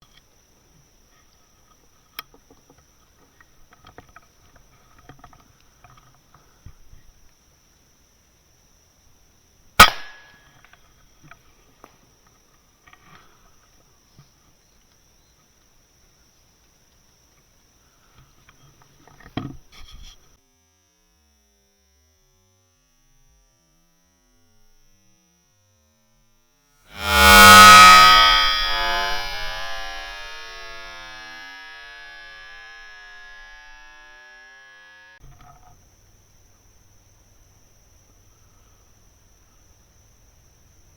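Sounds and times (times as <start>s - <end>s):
air rifle shot: 9.8s - 10.2s
ringing musical chord: 27.0s - 32.5s.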